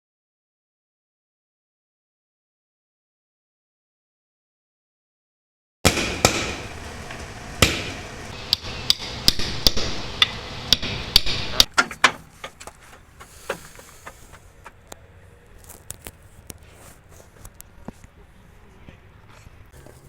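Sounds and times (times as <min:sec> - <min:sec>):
hammer striking metal: 0:05.8 - 0:12.2.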